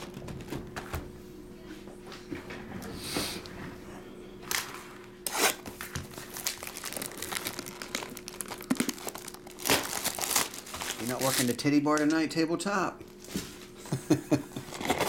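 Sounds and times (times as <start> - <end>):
plastic wrapping crinkling and tearing: 5.3 - 12.1, 14.7 - 15.0.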